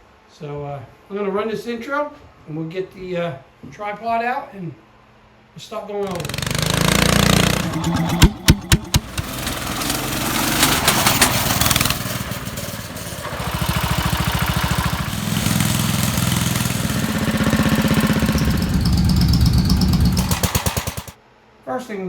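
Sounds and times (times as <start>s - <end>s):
small gasoline engine running: 6.0s - 21.2s.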